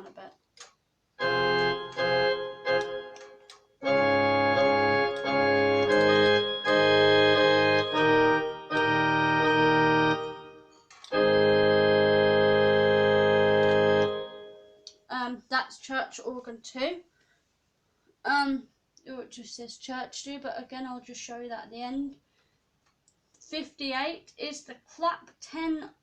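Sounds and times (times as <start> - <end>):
keyboard organ chords: 1.2 - 14.8.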